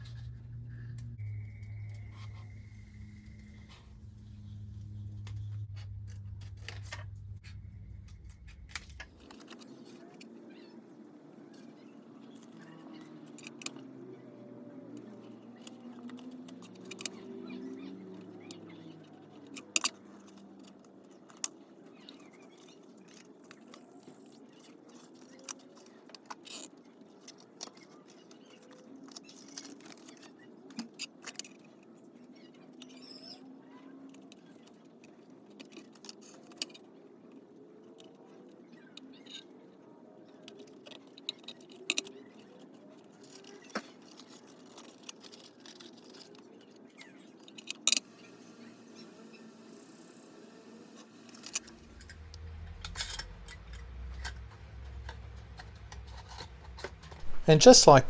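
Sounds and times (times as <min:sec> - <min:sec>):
low hum: 0:00.0 - 0:09.4, 0:51.8 - 0:58.0
faint wavering hum: 0:00.0 - 0:12.7.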